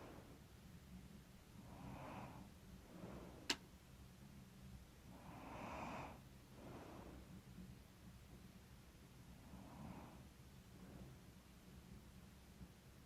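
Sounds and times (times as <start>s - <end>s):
woman breathing in sleep: 1.6s - 3.6s, 5.1s - 7.3s.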